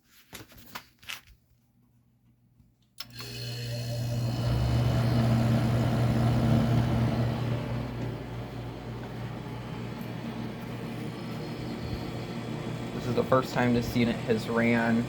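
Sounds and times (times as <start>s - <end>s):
dehumidifier humming: 3.0s - 15.0s
fan air rushing: 4.4s - 15.0s.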